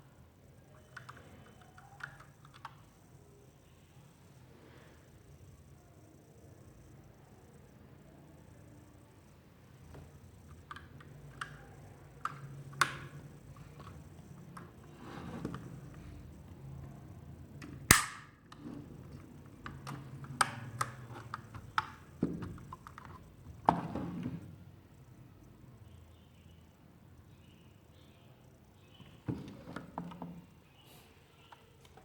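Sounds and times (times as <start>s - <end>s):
sharp snap: 17.9s - 18.3s.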